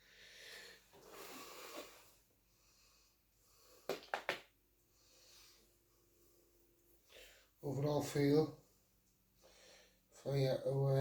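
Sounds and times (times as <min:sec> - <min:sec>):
soft breath: 0:04.8 - 0:07.6, 0:09.4 - 0:10.1.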